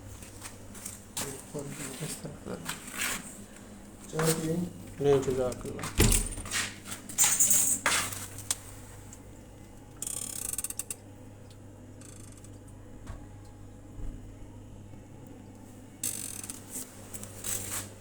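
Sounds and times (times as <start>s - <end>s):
steady low hum: 0.0s - 18.0s
rapid mechanical clicking: 10.0s - 11.0s.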